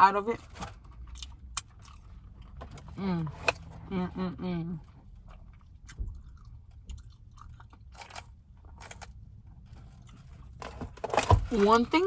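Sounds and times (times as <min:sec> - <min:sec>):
chewing fried food: 0:01.0 - 0:02.8, 0:04.9 - 0:09.2, 0:09.8 - 0:10.6.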